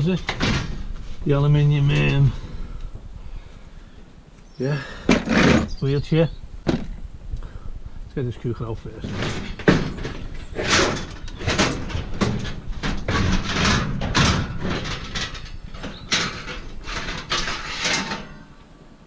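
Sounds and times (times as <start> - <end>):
sheet metal scraping and clunking: 0.0 - 2.7, 5.0 - 6.0, 8.9 - 18.7.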